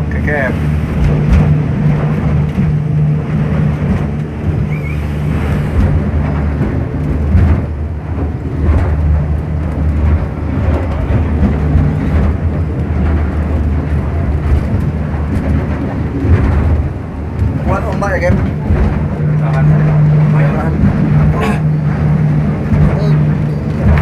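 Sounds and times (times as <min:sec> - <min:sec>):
boat engine droning: 0:00.0 - 0:24.0
water rushing and splashing: 0:00.0 - 0:24.0.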